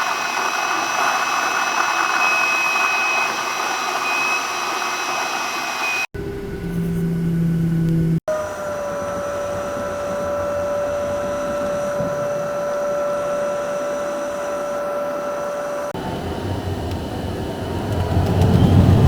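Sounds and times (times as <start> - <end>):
jet engine whine in cabin: 0.0 - 19.0.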